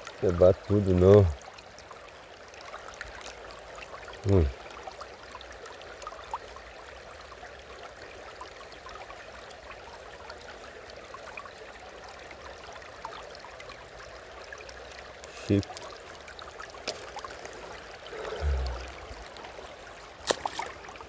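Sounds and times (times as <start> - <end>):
human vocal sound falling in pitch: 18.4 - 19.1.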